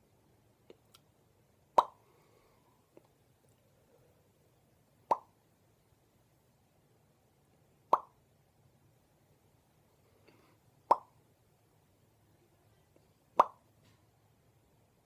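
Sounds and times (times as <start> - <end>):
mouth pops: 1.8 - 2.0, 5.1 - 5.3, 7.9 - 8.2, 10.9 - 11.1, 13.4 - 13.6.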